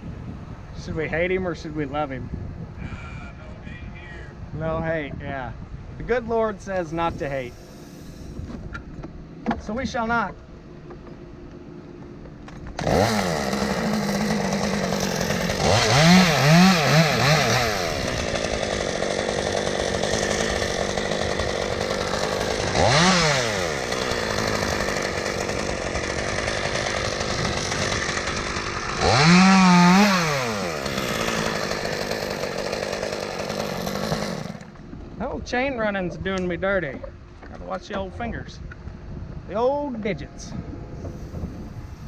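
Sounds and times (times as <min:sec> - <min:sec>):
chainsaw engine revving: 0:12.7 - 0:34.8.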